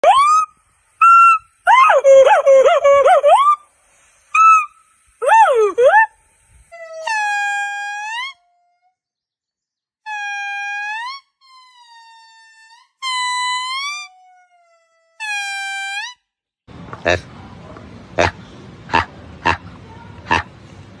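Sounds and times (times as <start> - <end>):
monkey horn-like calls: 0.0 - 3.6, 4.3 - 6.1, 7.0 - 8.5.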